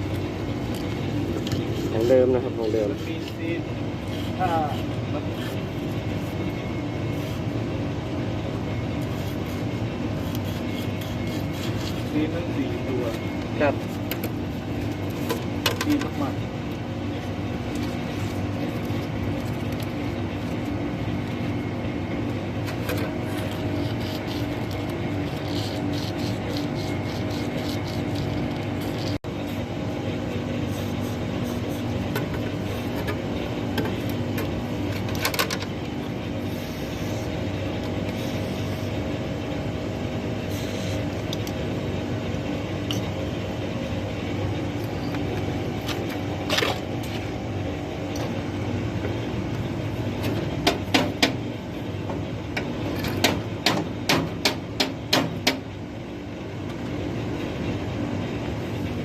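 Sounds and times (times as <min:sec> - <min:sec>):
machine humming: 0:00.0 - 0:59.0
sharp metal knocks: 0:50.6 - 0:51.4, 0:53.0 - 0:55.7.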